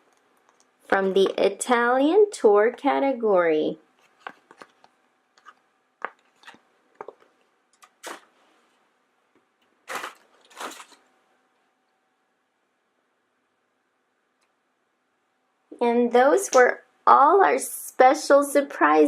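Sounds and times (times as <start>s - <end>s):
packaging crinkling: 4.0s - 8.4s, 9.8s - 11.1s.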